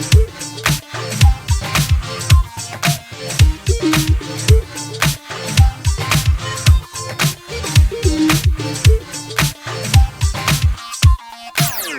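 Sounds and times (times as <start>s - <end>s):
bass line: 0.0s - 10.8s
electronic dance music: 0.0s - 11.9s
kick drum beat: 0.1s - 0.3s, 1.2s - 2.5s, 3.4s - 6.9s, 7.8s - 11.2s.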